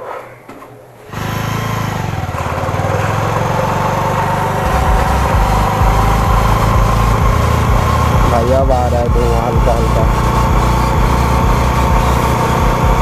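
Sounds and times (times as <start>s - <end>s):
motorcycle engine running: 1.1s - 13.0s
low rumble: 4.6s - 13.0s.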